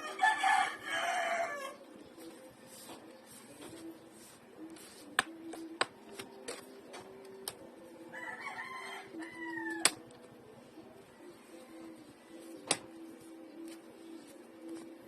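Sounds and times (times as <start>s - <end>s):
rooster crowing: 0.0s - 1.8s, 8.1s - 10.0s.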